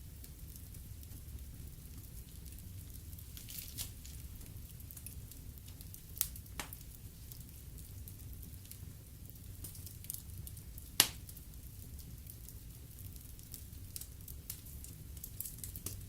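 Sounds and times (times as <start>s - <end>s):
wood fire crackling: 0.0s - 16.0s
sharp pops of fire: 5.0s - 7.0s, 9.6s - 11.4s.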